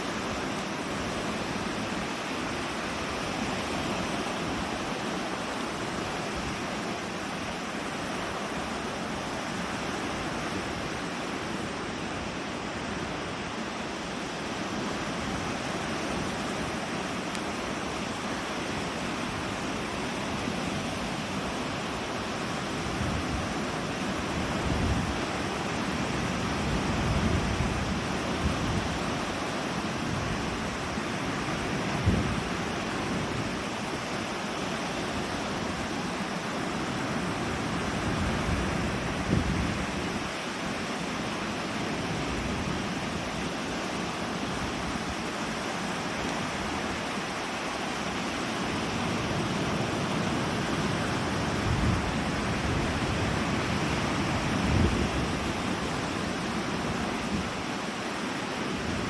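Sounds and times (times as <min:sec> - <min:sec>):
lake surf: 0:00.0 - 0:59.0
rain: 0:00.0 - 0:59.0
wind on microphone: 0:17.6 - 0:59.0.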